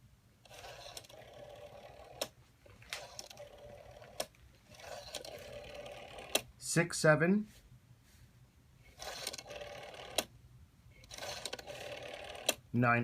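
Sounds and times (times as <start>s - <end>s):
rotary dial whirring: 0.4s - 6.5s, 8.8s - 12.6s
rotary dial click: 2.9s - 6.5s, 9.0s - 10.3s.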